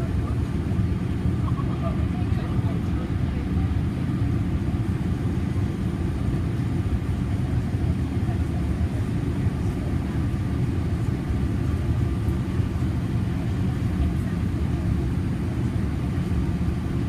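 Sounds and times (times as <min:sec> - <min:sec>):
airplane cabin engine rumble: 0:00.0 - 0:17.0.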